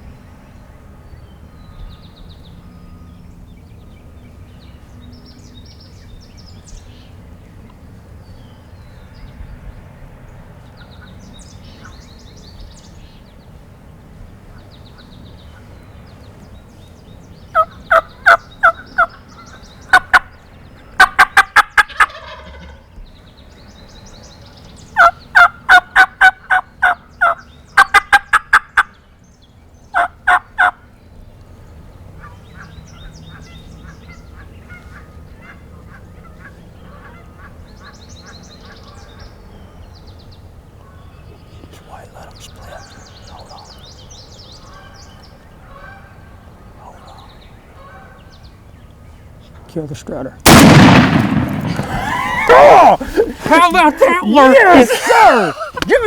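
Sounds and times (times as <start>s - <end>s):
turkey calling: 17.6s - 20.3s, 21.0s - 22.9s, 25.0s - 28.9s, 30.0s - 30.8s
small birds chirping: 22.9s - 28.0s, 30.6s - 56.0s.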